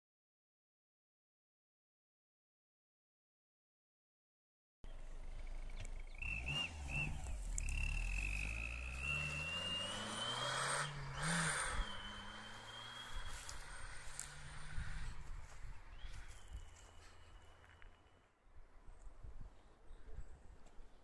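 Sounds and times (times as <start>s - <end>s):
car engine running: 4.9s - 15.6s
turbo whistle: 6.3s - 13.8s.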